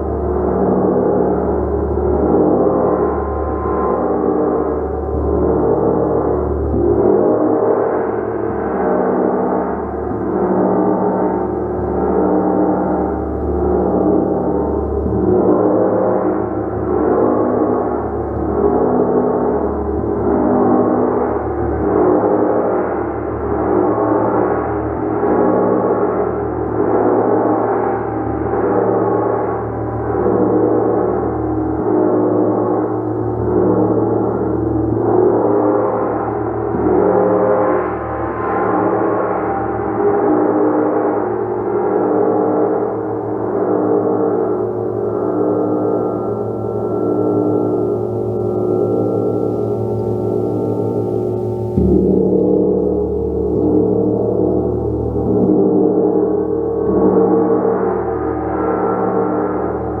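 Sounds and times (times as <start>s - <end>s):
gong ringing: 44.7s - 55.6s.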